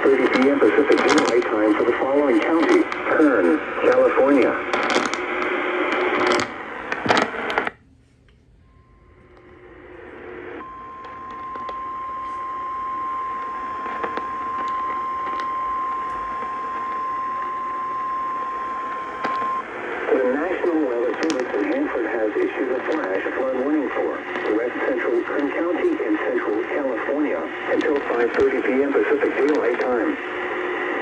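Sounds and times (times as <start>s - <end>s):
loud crackling static: 0.0s - 7.8s, 9.4s - 31.0s
warning alarm tone: 10.6s - 19.7s.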